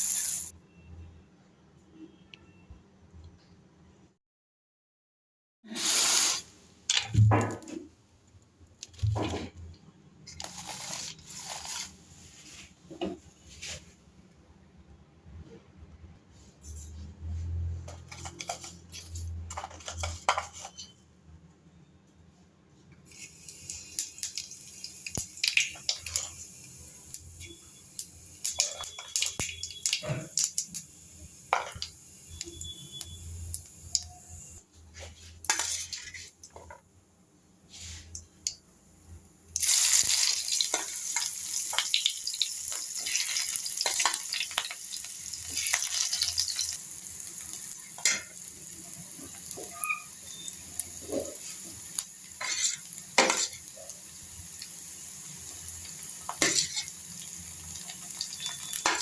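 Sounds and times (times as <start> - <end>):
food sizzling in hot oil: 0.0 - 0.5, 5.7 - 6.5, 10.3 - 12.0, 23.1 - 34.6, 39.6 - 59.0
spoon stirring in a pan: 35.4 - 36.8, 49.2 - 54.0, 56.3 - 57.0
metal utensils clinking on pots: 47.9 - 48.4, 52.4 - 53.7, 56.3 - 57.0, 58.2 - 59.0.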